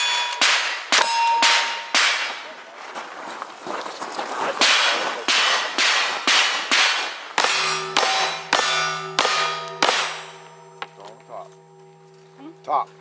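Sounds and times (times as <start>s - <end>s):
steel target clanging and ringing: 0.0s - 2.6s, 4.5s - 11.5s
rapid gunshots: 4.6s - 10.4s.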